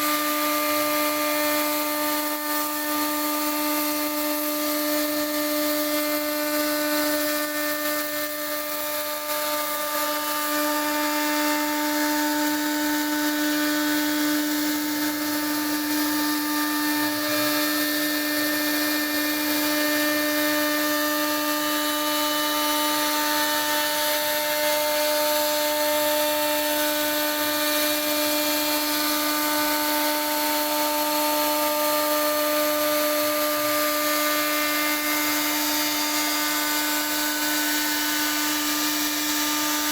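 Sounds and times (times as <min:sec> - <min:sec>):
router spindle whining: 0:14.4 - 0:39.9.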